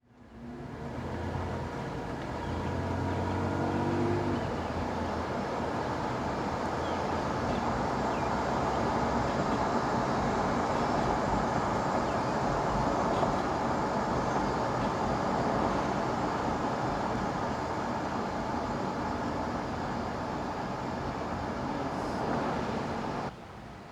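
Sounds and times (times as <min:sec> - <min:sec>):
road noise: 0:00.1 - 0:23.9
pickup truck engine: 0:00.2 - 0:23.3
whine from rear axle: 0:00.6 - 0:23.3.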